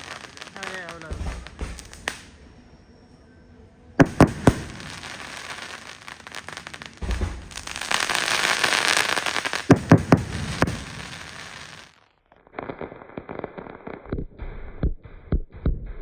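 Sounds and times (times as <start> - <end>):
firework bangs: 0.0 - 2.6, 4.0 - 14.1
firework crackling: 0.0 - 2.7, 4.0 - 14.2
low thump: 1.1 - 2.2, 7.0 - 7.8.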